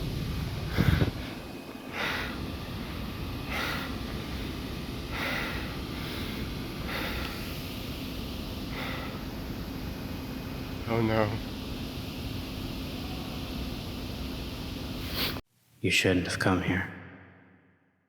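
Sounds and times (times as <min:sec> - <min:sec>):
steady low hum: 0:00.0 - 0:17.0
person breathing: 0:00.6 - 0:08.0, 0:08.6 - 0:09.4.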